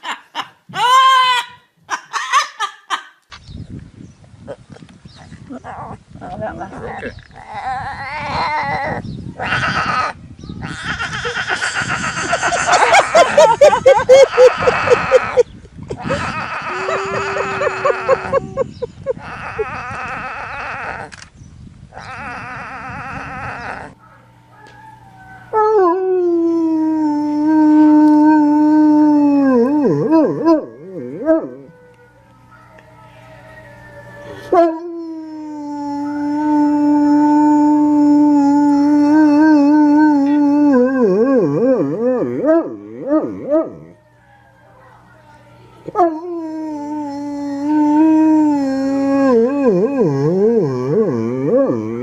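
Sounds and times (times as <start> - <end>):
warbling animal calls: 5.6 - 13.2, 21.9 - 24.0
dog howling: 22.0 - 44.6, 45.9 - 52.0.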